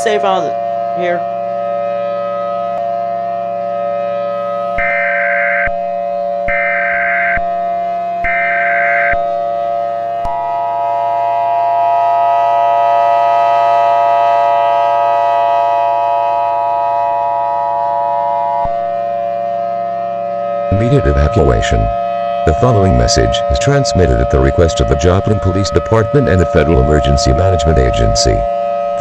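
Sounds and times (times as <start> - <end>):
civil defense siren: 0.0 - 29.0
warbling digital header tones: 20.7 - 28.5
two-tone attention signal: 20.7 - 29.0.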